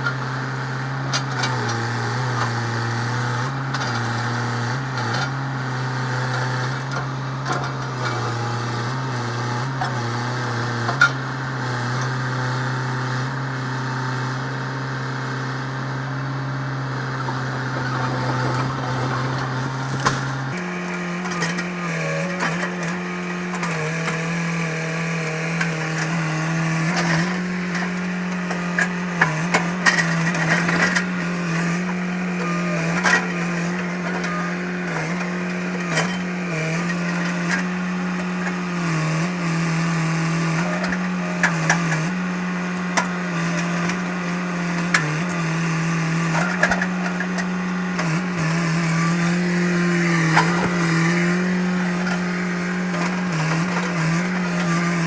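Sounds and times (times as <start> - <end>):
excavator engine and hydraulics: 0.0 - 55.0
sharp cracks and knocks: 19.5 - 20.4.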